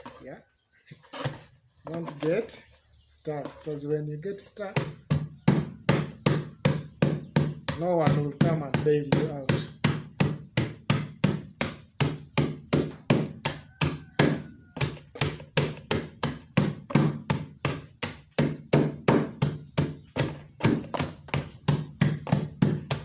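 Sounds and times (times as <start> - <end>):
herbs being pounded in plastic can: 3.2 - 23.0.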